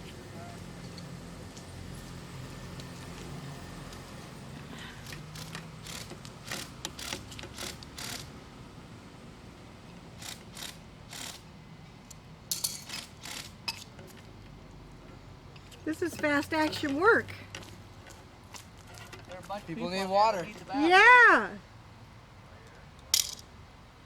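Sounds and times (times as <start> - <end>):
metallic clicks and scrapes: 5.0 - 8.3, 10.2 - 11.4, 12.1 - 14.3, 15.6 - 19.6.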